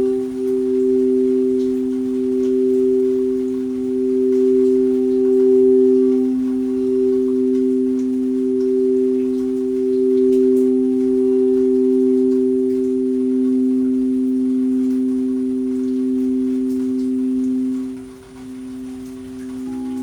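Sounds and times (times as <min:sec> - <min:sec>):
sound bowls ringing drone: 0:00.0 - 0:20.0.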